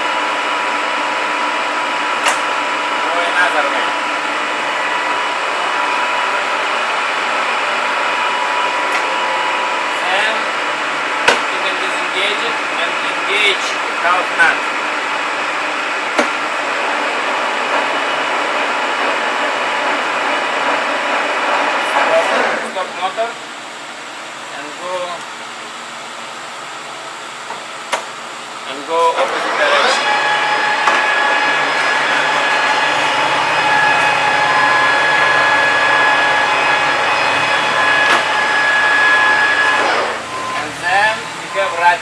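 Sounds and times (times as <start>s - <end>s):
lathe gearing whirring: 0.0s - 24.5s, 25.3s - 42.0s
high whine: 29.4s - 42.0s.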